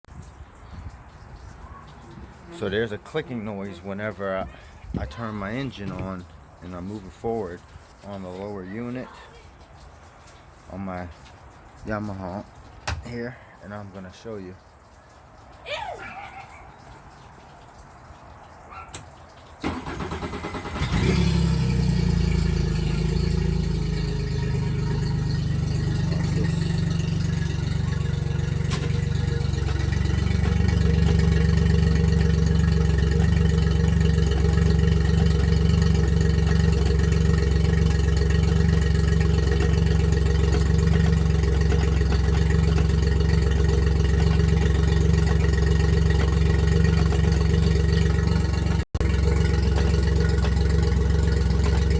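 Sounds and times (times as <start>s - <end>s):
outboard motor starting and running: 1.1s - 9.2s, 19.6s - 51.9s.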